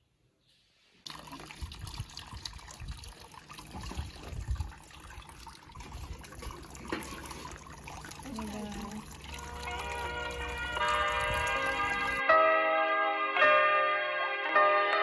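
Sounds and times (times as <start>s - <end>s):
water running and trickling: 1.0s - 12.2s.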